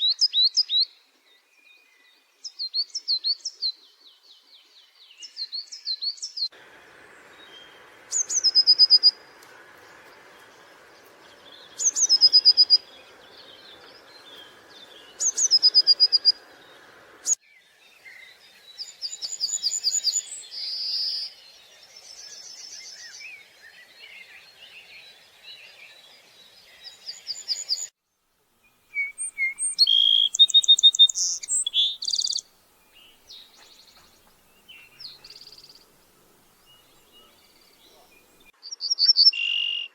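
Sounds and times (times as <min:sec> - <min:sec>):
songbirds singing and chirping: 0:00.0 - 0:39.9
running water rushing: 0:06.6 - 0:17.3.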